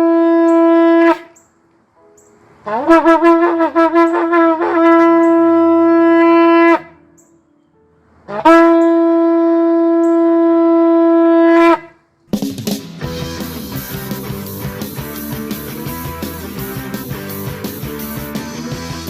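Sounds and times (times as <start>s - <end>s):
ram's horn blasts: 0.0s - 1.5s, 2.6s - 7.0s, 8.3s - 12.1s
music: 2.0s - 9.0s, 12.2s - 19.0s.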